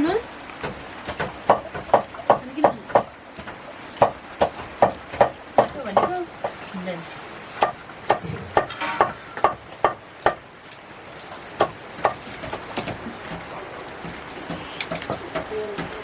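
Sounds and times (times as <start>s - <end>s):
sharp irregular clicks and knocks: 0.6s - 6.6s, 11.3s - 16.0s
faint voice: 15.4s - 16.0s.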